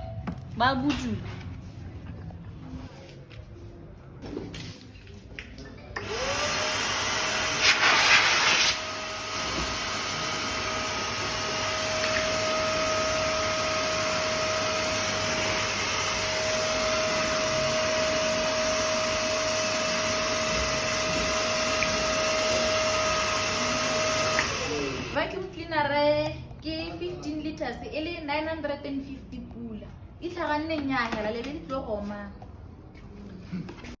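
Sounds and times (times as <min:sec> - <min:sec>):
vacuum cleaner running: 0:06.0 - 0:25.2
burst of air: 0:07.6 - 0:08.8.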